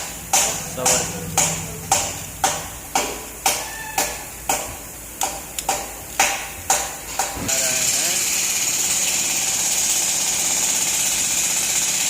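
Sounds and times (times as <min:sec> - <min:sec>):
hammer tapping metal: 0:00.0 - 0:07.3.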